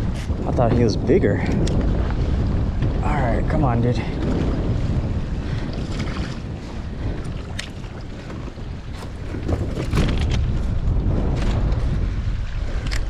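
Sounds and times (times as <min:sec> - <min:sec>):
wind buffeting microphone: 0:00.0 - 0:12.6
knocks and clicks: 0:09.0 - 0:10.2.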